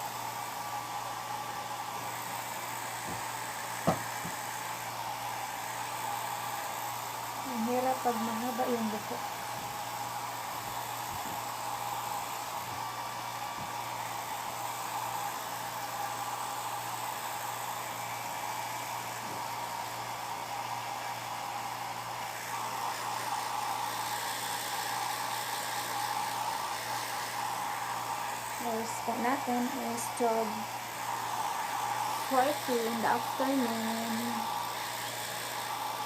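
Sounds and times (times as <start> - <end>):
hair dryer blowing: 0.0 - 36.0.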